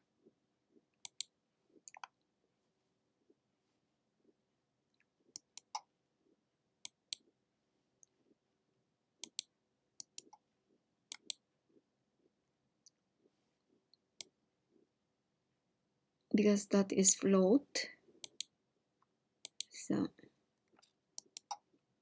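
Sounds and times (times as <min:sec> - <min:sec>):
computer mouse clicking: 0:01.0 - 0:01.3, 0:05.4 - 0:05.8, 0:09.2 - 0:10.4, 0:11.1 - 0:11.4, 0:18.2 - 0:18.5, 0:19.4 - 0:19.7, 0:21.2 - 0:21.6.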